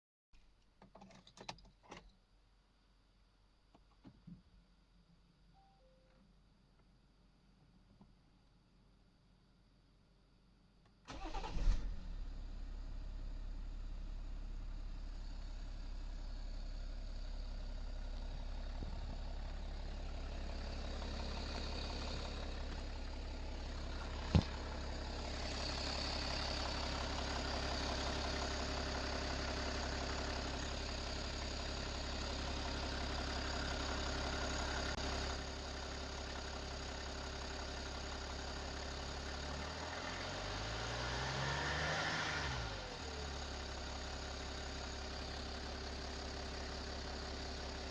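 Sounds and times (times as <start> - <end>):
diesel engine idling: 11.1 - 39.5, 43.0 - 47.9
engine revving: 39.3 - 43.5.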